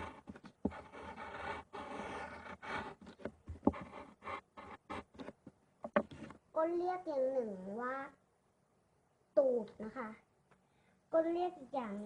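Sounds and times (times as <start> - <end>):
scraping and rubbing handling noise: 0.0 - 6.5.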